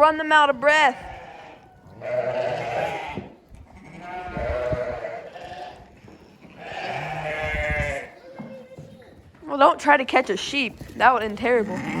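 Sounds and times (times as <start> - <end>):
sheep bleating: 1.0 - 5.9, 6.5 - 8.2.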